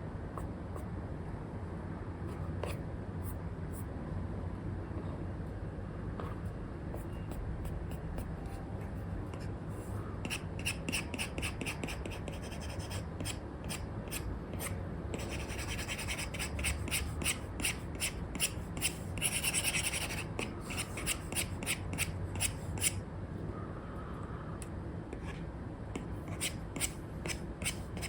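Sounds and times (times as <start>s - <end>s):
faint steady hum: 0.0s - 28.0s
stylus scratching on screen: 10.3s - 23.0s, 26.0s - 28.0s.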